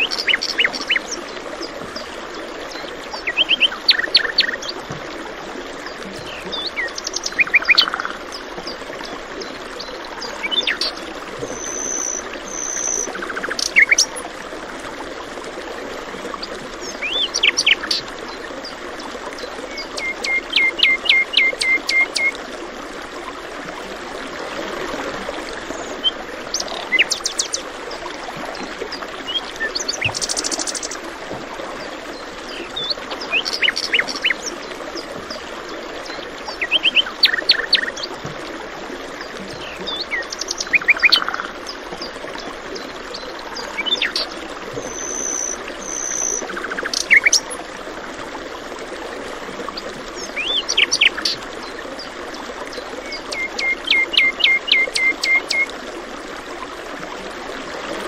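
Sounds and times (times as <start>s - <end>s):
birds singing and chirping: 0.0s - 1.2s, 5.9s - 8.5s, 9.8s - 14.1s, 43.2s - 47.6s, 50.2s - 51.8s, 53.1s - 55.7s
running water rushing: 0.0s - 58.0s.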